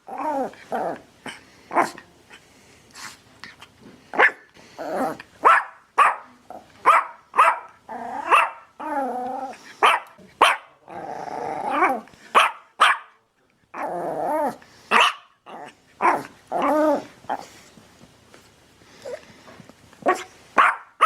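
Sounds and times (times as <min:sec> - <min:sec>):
dog barking: 0:04.2 - 0:04.4, 0:05.4 - 0:08.6, 0:09.8 - 0:10.8, 0:12.4 - 0:13.2, 0:14.9 - 0:15.3, 0:20.1 - 0:21.0.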